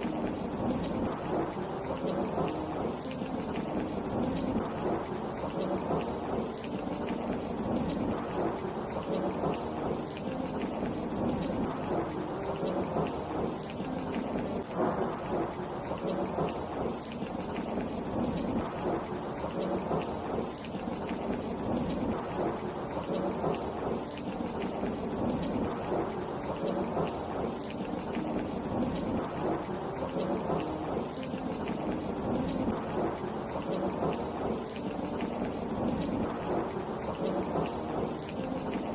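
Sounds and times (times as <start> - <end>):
heavy rain: 0.0 - 38.9.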